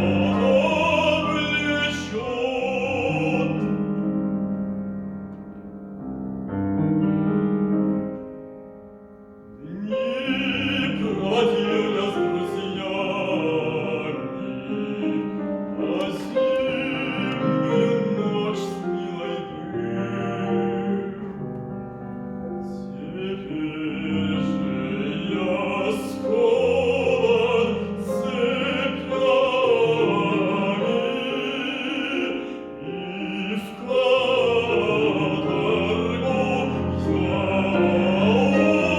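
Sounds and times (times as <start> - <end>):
man singing operatically: 0.0 - 4.0, 9.6 - 21.4, 22.6 - 38.9
piano: 0.0 - 38.9.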